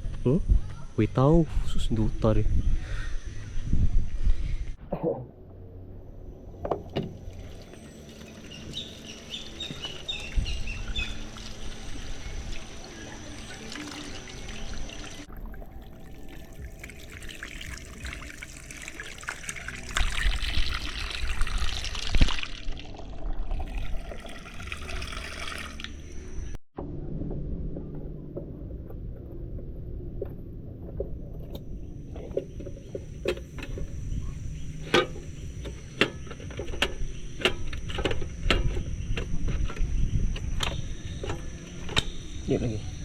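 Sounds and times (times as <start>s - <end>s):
water pouring and trickling: 6.9s - 26.1s
water splashing: 9.6s - 25.9s.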